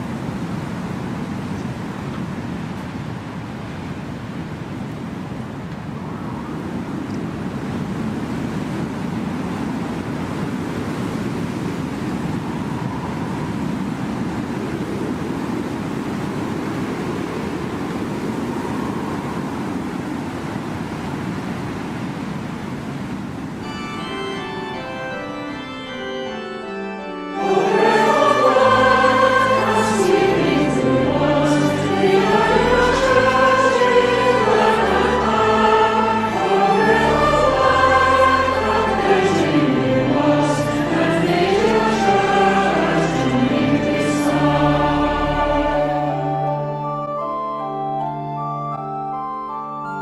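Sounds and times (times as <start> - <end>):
rushing noise: 10.8 - 21.6, 23.4 - 47.4
organ-like keyboard chords: 23.6 - 50.0
person singing: 27.2 - 47.0.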